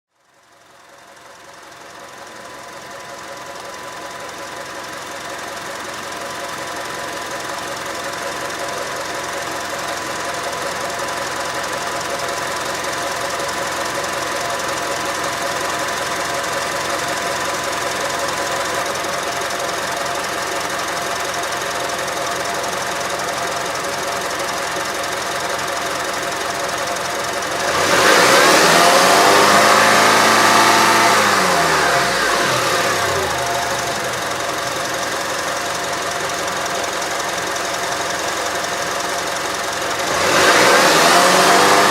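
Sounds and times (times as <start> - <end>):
car engine running: 0.3 - 41.9.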